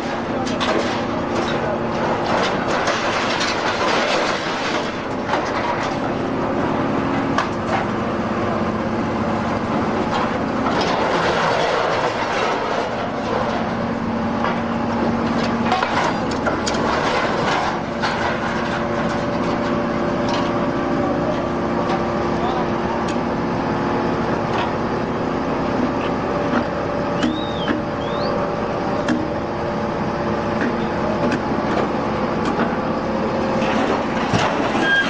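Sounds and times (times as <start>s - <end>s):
scrap metal clanking and rattling: 0.0s - 6.4s, 9.8s - 22.1s, 33.4s - 35.0s
baler machine hum: 0.0s - 35.0s.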